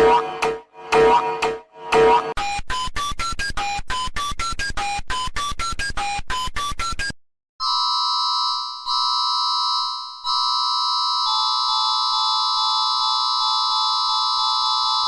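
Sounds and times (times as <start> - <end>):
steady multi-pitch alarm tone: 0.0 - 2.4, 7.6 - 15.0.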